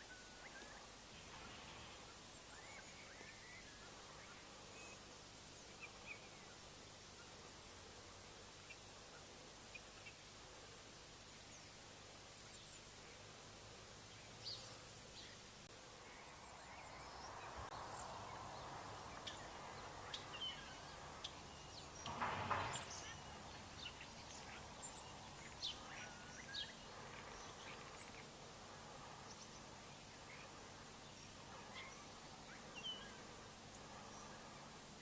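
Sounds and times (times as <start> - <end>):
faint outdoor background noise: 0.0 - 35.0.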